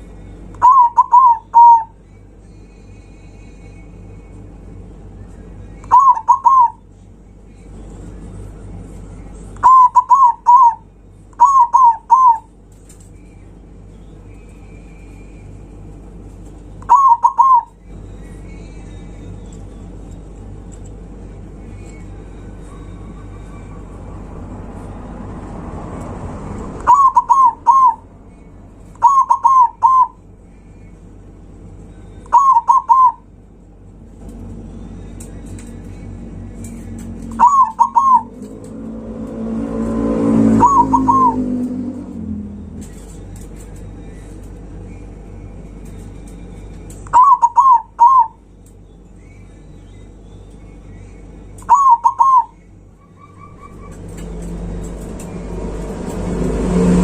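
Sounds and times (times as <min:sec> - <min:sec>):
dove cooing: 0:00.6 - 0:01.9, 0:05.9 - 0:06.8, 0:09.6 - 0:10.8, 0:11.4 - 0:12.5, 0:16.9 - 0:17.8, 0:26.8 - 0:28.1, 0:29.0 - 0:30.2, 0:32.3 - 0:33.3, 0:37.2 - 0:41.7, 0:47.1 - 0:48.4, 0:51.7 - 0:55.0
vehicle passing: 0:22.5 - 0:30.4, 0:34.2 - 0:45.8, 0:51.7 - 0:57.0.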